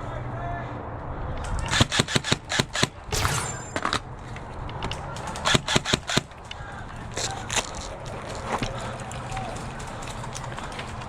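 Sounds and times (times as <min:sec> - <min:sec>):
airsoft gun shots: 0:01.6 - 0:04.0, 0:05.4 - 0:06.3.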